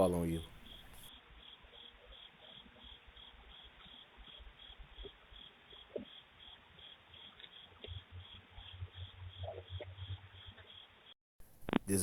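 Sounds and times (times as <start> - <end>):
crickets chirping: 0.0 - 11.2.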